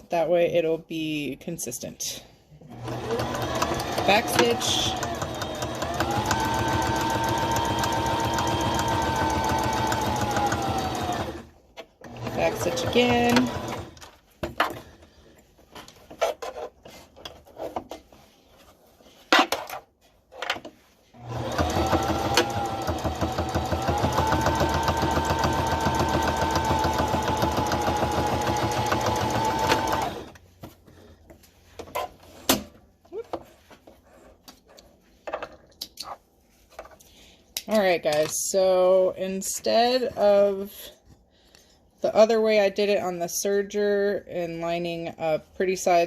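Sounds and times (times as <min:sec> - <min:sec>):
sewing machine stitching: 0:02.7 - 0:14.1, 0:21.2 - 0:30.4.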